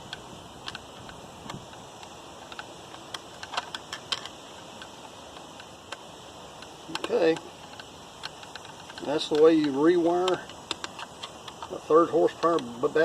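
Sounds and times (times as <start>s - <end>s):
screwdriver and metal parts clicking: 6.6s - 12.7s.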